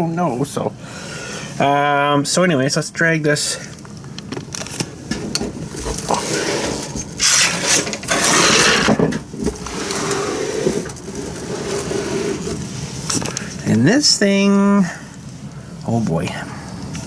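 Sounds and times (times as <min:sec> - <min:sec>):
printer dragged across surface: 0:05.8 - 0:13.1.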